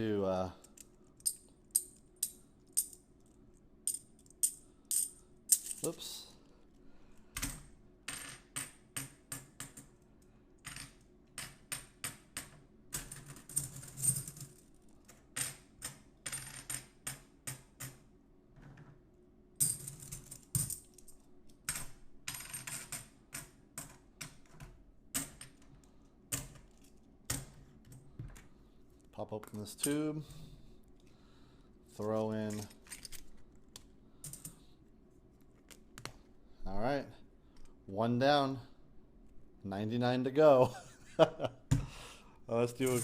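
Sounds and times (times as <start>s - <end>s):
coins clinking: 42.8s - 43.0s.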